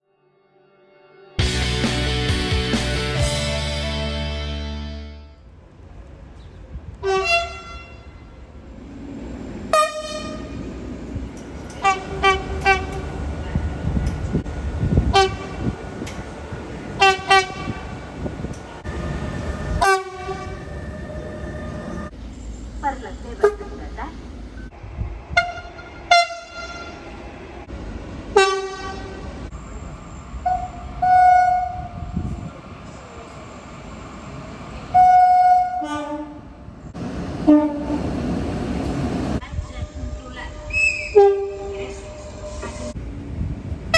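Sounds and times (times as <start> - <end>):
train rumbling: 1.4 - 43.9
train horn: 7.0 - 8.1, 9.7 - 10.6, 11.8 - 13.0, 15.1 - 15.7, 17.0 - 17.9, 19.8 - 20.6, 25.3 - 27.0, 28.4 - 29.2, 30.4 - 31.9, 34.9 - 36.5, 37.4 - 38.0, 41.0 - 42.6.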